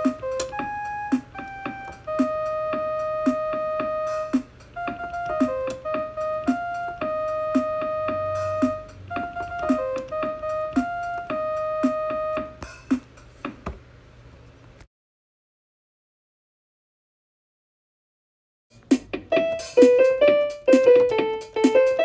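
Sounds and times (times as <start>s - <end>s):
electronic keyboard melody: 0.0s - 13.1s, 18.8s - 22.0s
keyboard rhythm beat: 0.0s - 13.8s, 18.8s - 22.0s.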